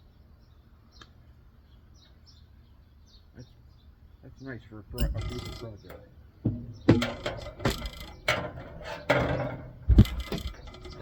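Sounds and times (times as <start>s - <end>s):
hard parts and tools clattering: 5.0s - 11.0s
heavy thump: 6.4s - 7.9s.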